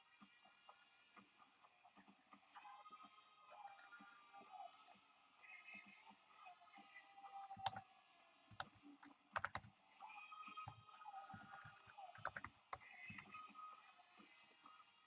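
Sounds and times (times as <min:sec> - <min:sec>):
faint keyboard typing: 0:07.5 - 0:07.9, 0:08.5 - 0:09.8, 0:10.5 - 0:13.4.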